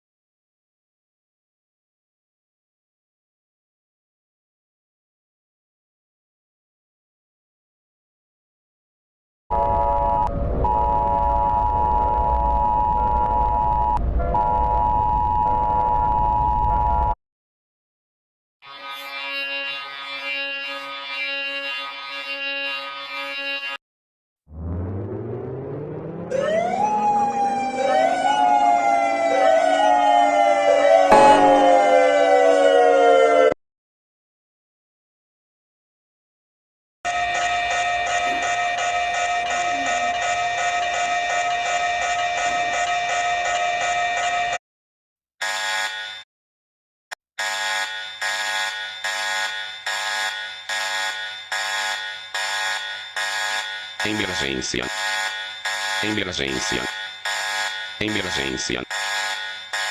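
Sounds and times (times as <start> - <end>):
sweeping alarm siren: 9.5 - 17.2, 24.5 - 33.6, 37.1 - 44.6, 45.4 - 46.2, 47.4 - 59.9
low siren winding up: 18.7 - 23.8, 24.5 - 33.6, 47.4 - 59.9
electronic alarm beeping: 47.4 - 59.9.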